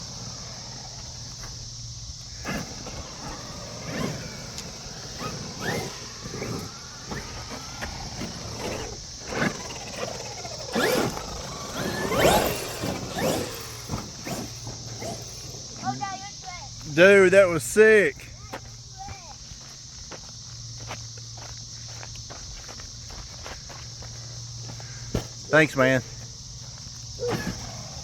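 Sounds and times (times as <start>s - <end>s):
electric motors whining: 0.0s - 19.1s, 24.2s - 28.0s
tyres scrabbling: 2.2s - 16.2s
knocks from bumps and landings: 2.5s - 15.7s, 27.2s - 28.0s.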